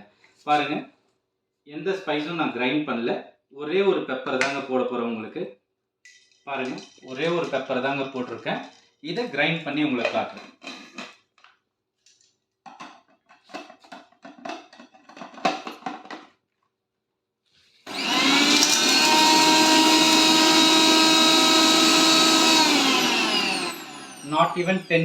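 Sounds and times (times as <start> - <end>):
mixer grinder motor whine: 17.9 - 25.0.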